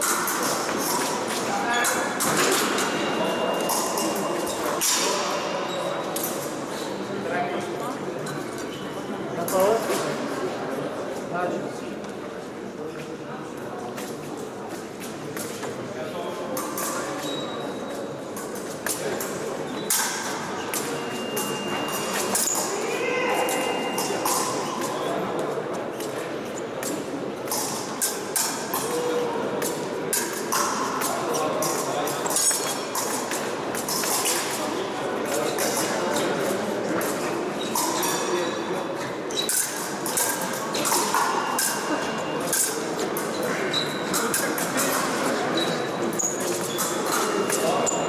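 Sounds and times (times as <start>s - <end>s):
murmur of voices: 0.0s - 48.0s
shoes squeaking: 16.9s - 25.1s, 30.2s - 48.0s.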